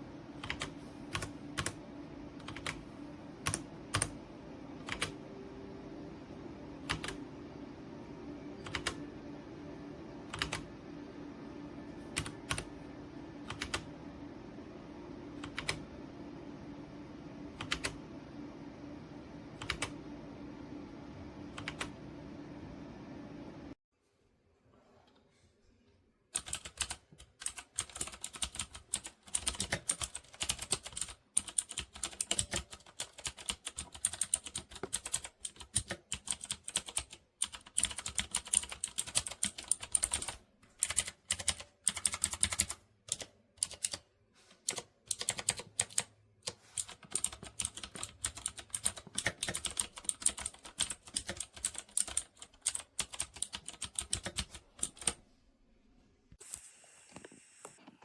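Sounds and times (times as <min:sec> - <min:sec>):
mechanical keyboard typing: 0:00.3 - 0:01.8, 0:02.4 - 0:02.8, 0:03.4 - 0:04.2, 0:04.8 - 0:05.2, 0:06.8 - 0:07.2, 0:08.6 - 0:09.1, 0:10.3 - 0:10.7, 0:12.1 - 0:12.8, 0:13.4 - 0:13.9, 0:15.4 - 0:15.8, 0:17.6 - 0:18.0, 0:19.6 - 0:20.0, 0:21.5 - 0:22.0, 0:26.4 - 0:55.2.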